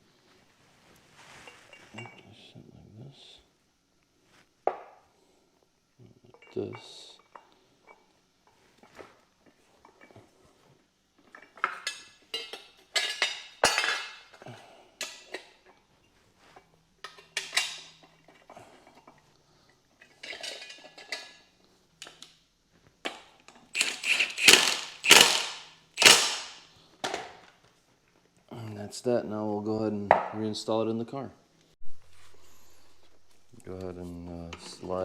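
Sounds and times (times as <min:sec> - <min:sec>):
metal parts and tools clinking: 0:23.8 - 0:26.6.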